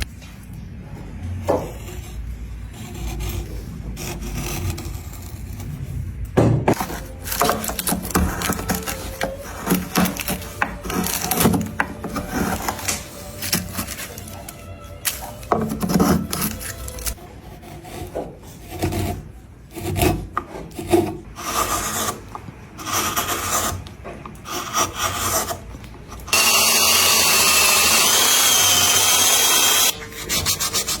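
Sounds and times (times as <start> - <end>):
rasp scraping wood: 1.4 - 6.0, 6.7 - 23.8.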